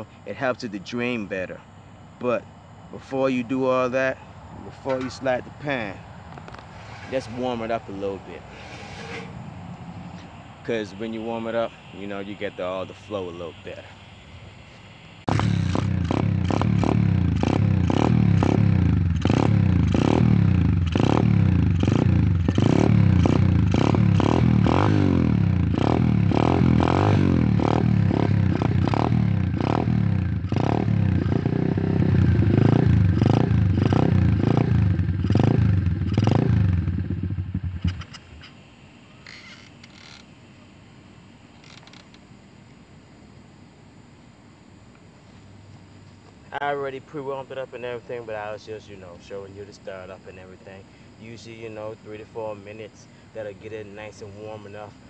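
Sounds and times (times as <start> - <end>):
dirt bike engine running: 15.3 - 38.2.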